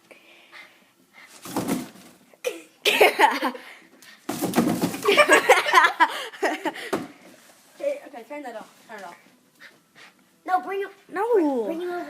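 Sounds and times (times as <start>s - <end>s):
people laughing loudly: 5.0s - 6.9s.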